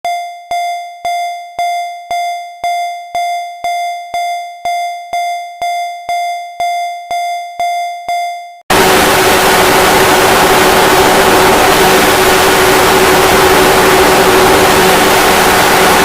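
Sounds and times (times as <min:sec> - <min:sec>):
buzzy alarm beeps: 0:00.1 - 0:08.6.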